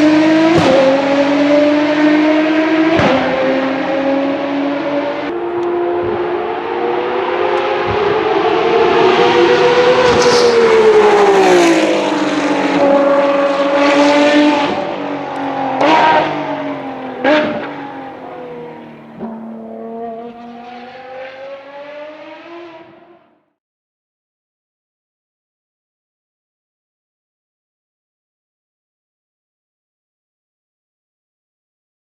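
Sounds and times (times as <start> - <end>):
engine revving blips: 0.0 - 23.1
race car engine: 0.0 - 23.6.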